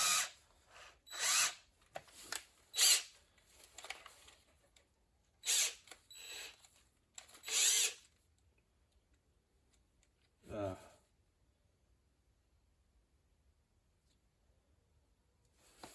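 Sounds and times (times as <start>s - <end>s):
power drill drilling metal: 0.0s - 0.4s, 1.1s - 1.6s, 2.8s - 3.1s, 5.4s - 6.5s, 7.4s - 8.0s.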